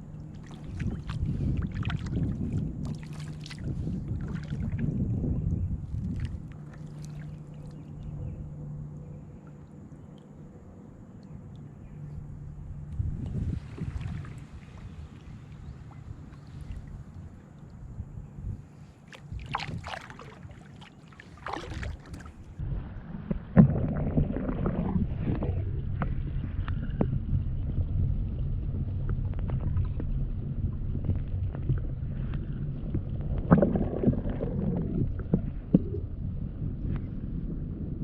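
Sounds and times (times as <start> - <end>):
wind rumble on microphone: 0.0 - 38.0
paddle splashing in water: 0.2 - 5.0, 5.8 - 8.0, 13.2 - 17.8, 18.7 - 27.0, 33.3 - 35.8.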